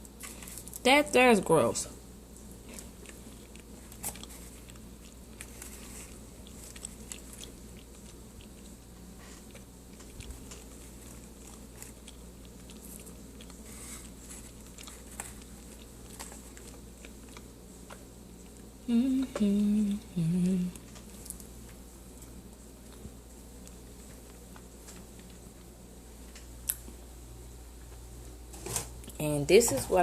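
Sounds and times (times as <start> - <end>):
faint low hum: 0.0 - 30.0
person chewing crunchy food: 2.2 - 18.8.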